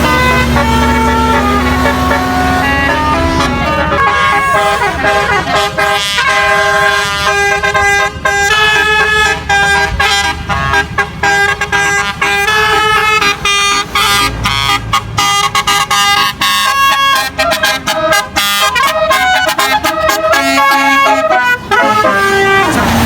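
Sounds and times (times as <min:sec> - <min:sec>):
bus melody horn: 0:00.0 - 0:23.0
low engine rumble: 0:00.0 - 0:23.0.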